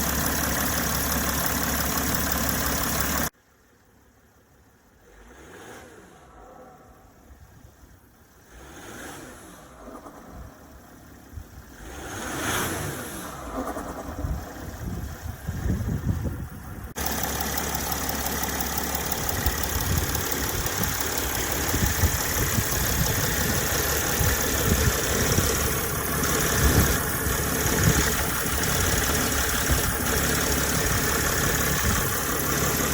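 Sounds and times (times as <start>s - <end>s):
car engine idling and revving: 0.0s - 32.9s
deep grumbling noise: 19.2s - 32.9s.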